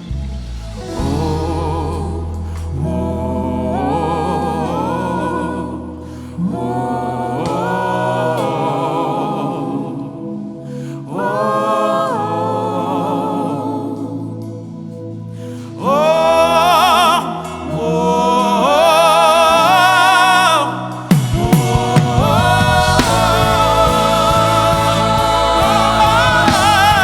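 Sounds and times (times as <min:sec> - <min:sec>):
bass and keyboard accompaniment: 0:00.0 - 0:27.0
wordless singing with vibrato: 0:00.0 - 0:27.0
backing voices: 0:15.5 - 0:27.0.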